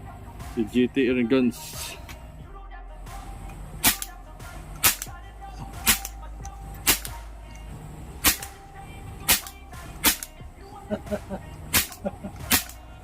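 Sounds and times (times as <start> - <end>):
air rifle shots cracking: 3.8 - 6.2, 6.8 - 7.3, 8.2 - 8.6, 9.2 - 10.4, 11.7 - 12.9.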